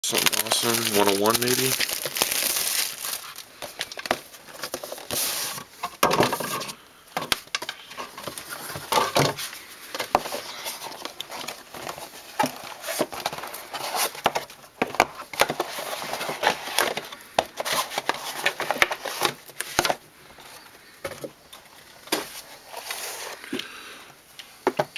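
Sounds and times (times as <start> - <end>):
packaging crinkling and clicking: 0.0 - 5.6
cards rustling: 0.0 - 5.7, 7.7 - 20.6.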